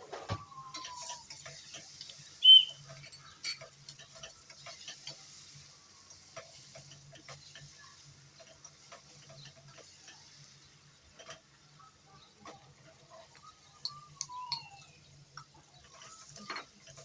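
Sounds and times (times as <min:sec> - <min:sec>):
food sizzling in a pan: 0:00.7 - 0:17.0.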